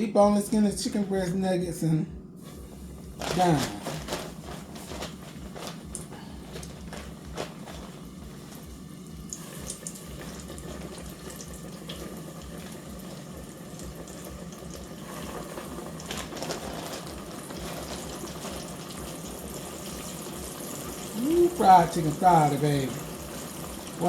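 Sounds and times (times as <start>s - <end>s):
food deep-frying sizzle: 2.4s - 24.0s
small crackles and pops: 3.2s - 21.2s.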